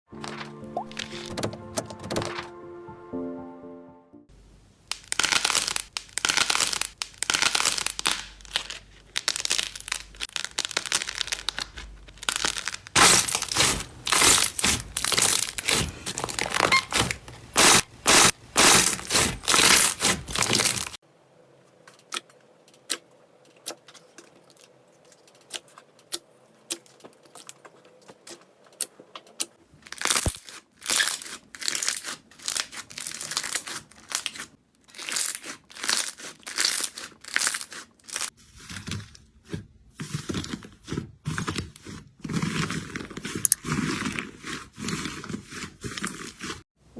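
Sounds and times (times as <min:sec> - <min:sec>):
slime squishing and popping: 0:04.9 - 0:21.0.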